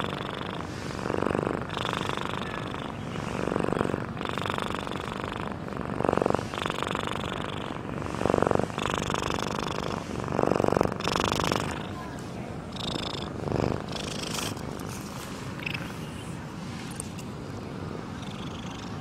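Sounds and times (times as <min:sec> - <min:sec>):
cat purring: 0:00.0 - 0:16.4, 0:18.0 - 0:19.0.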